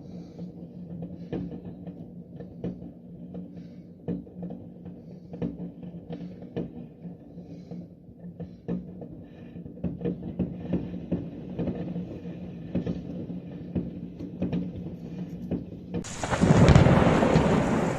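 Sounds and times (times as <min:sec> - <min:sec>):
rush of storm noise: 0:16.0 - 0:17.9.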